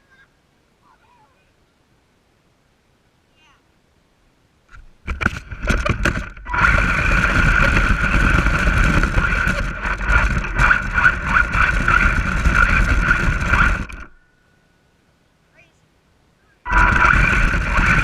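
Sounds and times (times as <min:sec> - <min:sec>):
wheels rumbling on ground: 0:04.7 - 0:14.5, 0:16.6 - 0:18.0
toy truck motor whine: 0:16.7 - 0:18.0.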